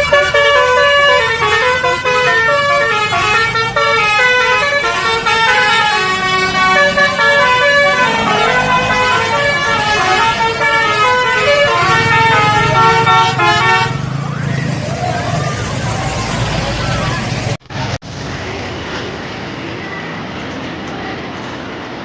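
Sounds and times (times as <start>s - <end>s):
musical air horn playing a tune: 0.0s - 14.1s
engine rumble: 0.0s - 22.0s.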